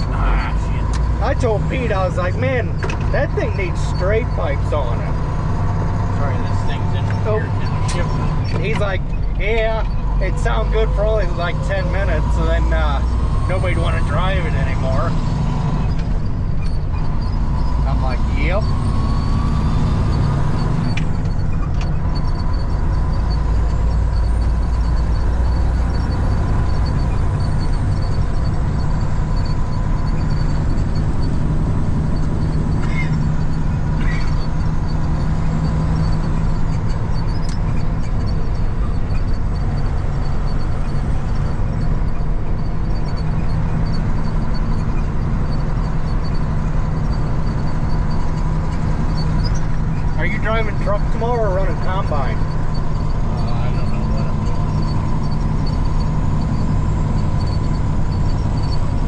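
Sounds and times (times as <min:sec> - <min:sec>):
tractor engine droning: 0:00.0 - 0:59.0
faint regular ticking: 0:20.1 - 0:59.0.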